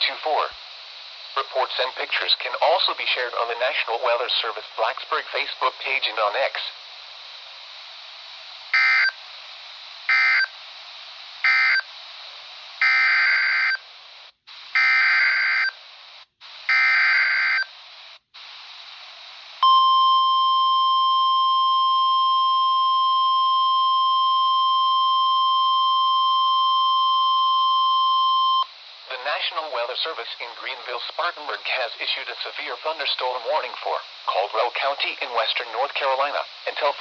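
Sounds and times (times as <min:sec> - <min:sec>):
faint static hiss: 0:00.0 - 0:37.0
radio data bursts: 0:01.2 - 0:07.9, 0:08.6 - 0:19.6, 0:28.6 - 0:37.0
steady warning alarm tone: 0:08.8 - 0:09.2, 0:10.1 - 0:10.5, 0:11.4 - 0:11.8, 0:12.8 - 0:13.8, 0:14.8 - 0:15.8, 0:16.7 - 0:17.7.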